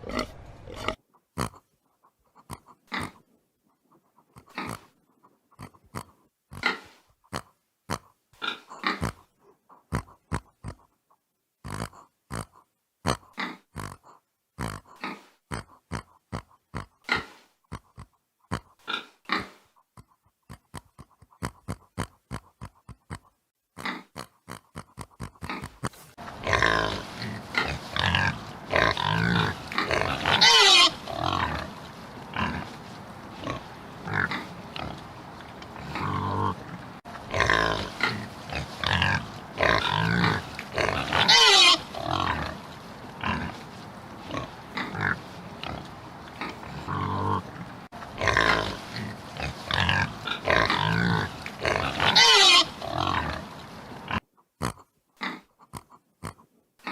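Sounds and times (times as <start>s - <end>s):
pig grunting: 0.0s - 1.7s, 2.4s - 3.3s, 4.3s - 10.9s, 11.6s - 56.9s
pig high-pitched cries: 27.9s - 31.7s, 38.9s - 42.5s, 49.8s - 53.4s.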